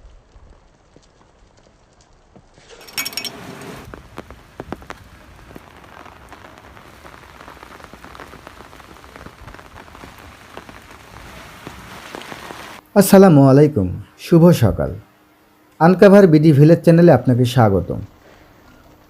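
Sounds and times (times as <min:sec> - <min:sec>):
rain falling: 0:00.0 - 0:12.9.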